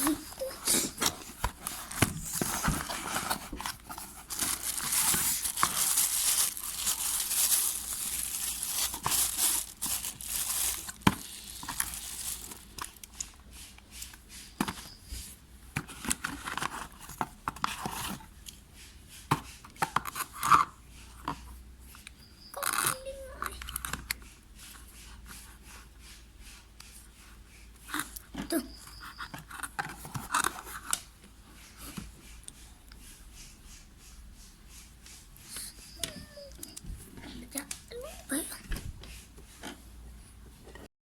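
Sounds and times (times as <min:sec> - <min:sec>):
packaging tearing and crinkling: 0:01.8 - 0:13.1.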